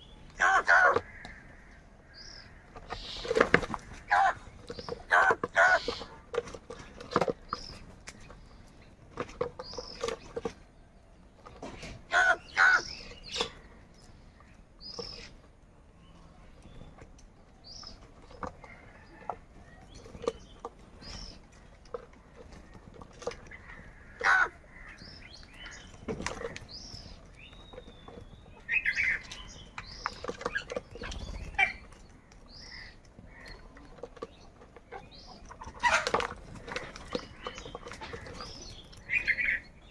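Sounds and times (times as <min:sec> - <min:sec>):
crows calling: 0:00.0 - 0:07.8, 0:11.7 - 0:15.3, 0:21.0 - 0:27.8, 0:28.7 - 0:34.0, 0:35.1 - 0:39.9
small birds chirping: 0:00.0 - 0:39.9
crows cawing: 0:00.4 - 0:02.8, 0:03.7 - 0:04.5, 0:05.1 - 0:06.1, 0:12.1 - 0:13.0, 0:23.5 - 0:26.6.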